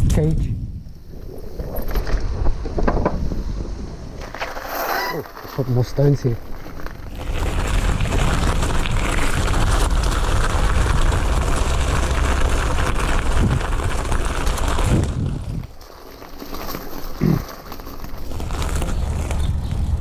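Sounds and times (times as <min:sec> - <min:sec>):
wind buffeting microphone: 0:00.0 - 0:04.4, 0:06.8 - 0:15.8, 0:18.4 - 0:20.0
rumble and rattle on dirt trail: 0:00.0 - 0:20.0.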